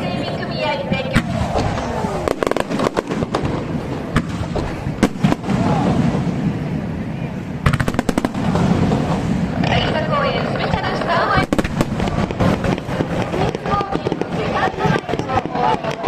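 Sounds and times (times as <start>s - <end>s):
crowd murmur: 0.0s - 16.0s
fireworks bangs: 0.0s - 16.0s
fireworks crackling: 0.0s - 16.0s.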